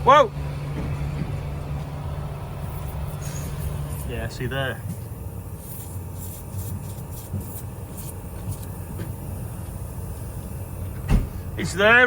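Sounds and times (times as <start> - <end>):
tractor engine idling: 0.0 - 12.0.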